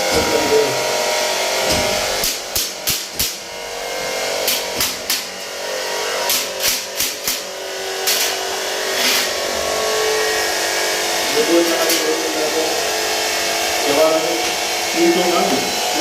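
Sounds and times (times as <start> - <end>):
steady background hum: 0.0 - 16.0
sharp knocks: 1.5 - 3.5.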